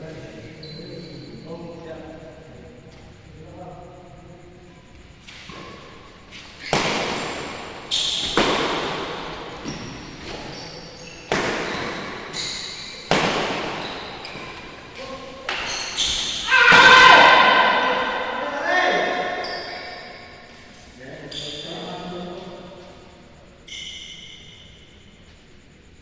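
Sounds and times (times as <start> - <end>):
court shoes squeaking: 0.0 - 26.0
racket striking shuttlecock: 6.7 - 10.5, 11.3 - 14.6.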